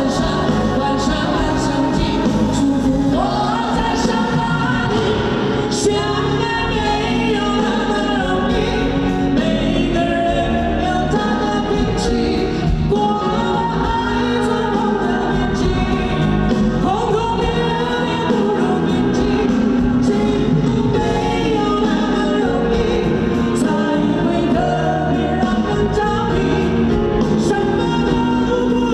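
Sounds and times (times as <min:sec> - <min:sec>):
live pop band playing: 0:00.0 - 0:28.9
vocalists singing: 0:00.0 - 0:28.9.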